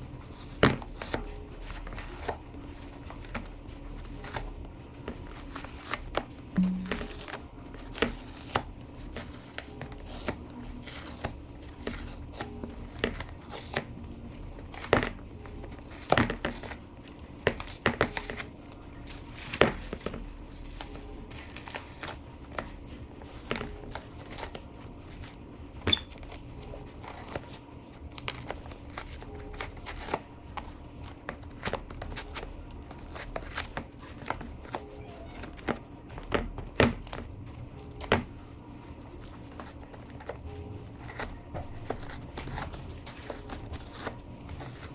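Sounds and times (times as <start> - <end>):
foam crinkling and tearing: 19.3 - 22.2.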